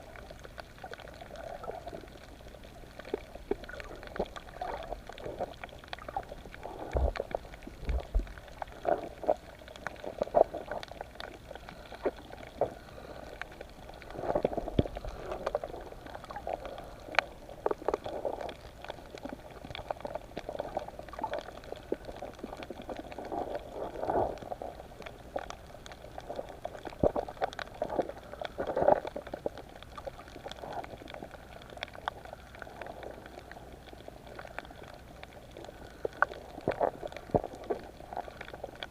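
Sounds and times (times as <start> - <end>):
underwater bubbling and gurgling: 0.0 - 38.9
underwater clicks and pops: 13.4 - 24.5.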